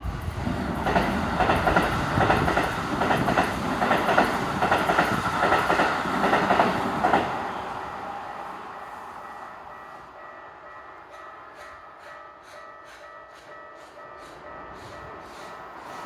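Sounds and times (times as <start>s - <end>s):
train wheels clattering over rails: 0.0s - 7.5s.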